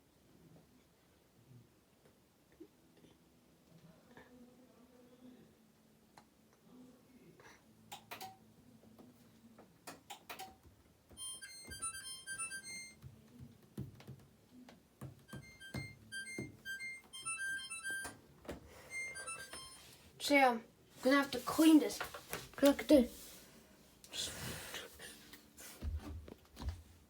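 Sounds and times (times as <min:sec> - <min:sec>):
electronic beep melody: 0:11.2 - 0:13.0, 0:15.3 - 0:18.2, 0:18.8 - 0:19.9.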